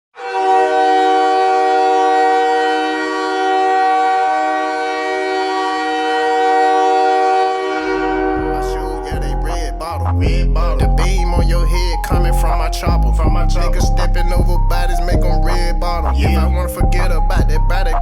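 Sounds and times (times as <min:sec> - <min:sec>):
goal horn blowing: 0:00.2 - 0:08.6
hip-hop music with heavy bass: 0:07.8 - 0:18.0.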